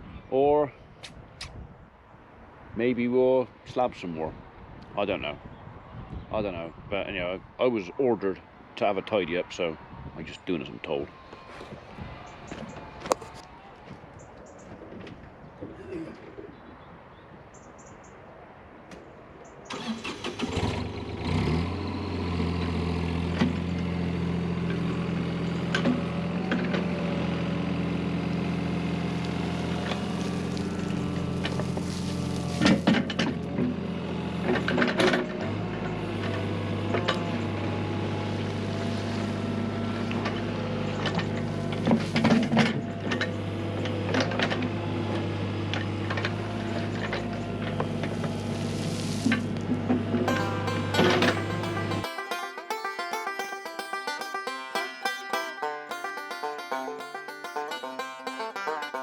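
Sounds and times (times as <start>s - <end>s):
skid steer engine running: 20.5s - 52.1s.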